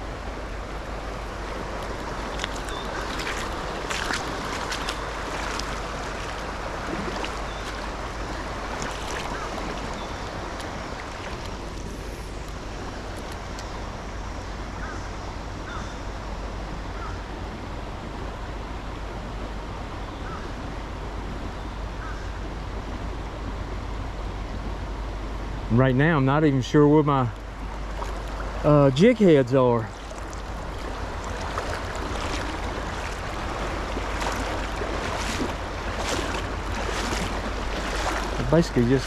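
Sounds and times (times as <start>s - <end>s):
river water rushing: 0.0s - 20.7s, 25.2s - 39.0s
wind buffeting microphone: 27.4s - 39.0s.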